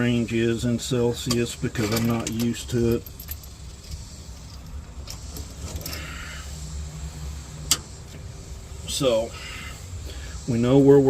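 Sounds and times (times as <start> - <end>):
low steady hum: 0.0 - 11.0
metallic clinks of tools: 1.2 - 6.1.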